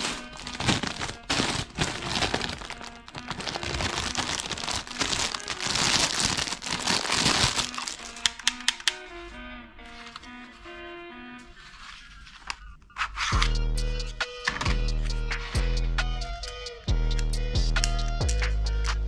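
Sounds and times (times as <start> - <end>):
plastic packaging crinkling: 0.0 - 8.4
background music: 0.0 - 19.0.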